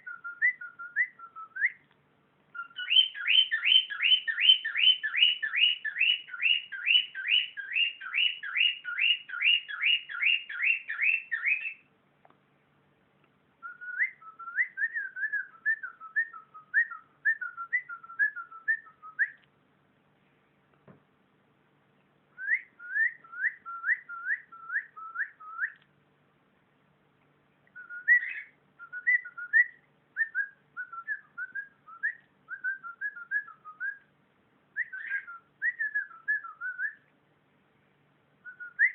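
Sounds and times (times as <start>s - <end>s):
cockatiel whistling: 0.0s - 1.8s, 2.5s - 11.9s, 13.6s - 19.4s, 22.4s - 25.8s, 27.7s - 34.1s, 34.8s - 37.1s, 38.4s - 38.9s.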